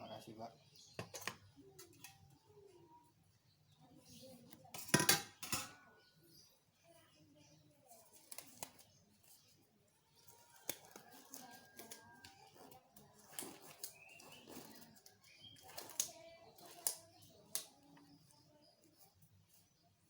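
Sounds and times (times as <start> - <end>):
small objects clicking and tapping: 1.0 - 2.3, 10.3 - 18.4.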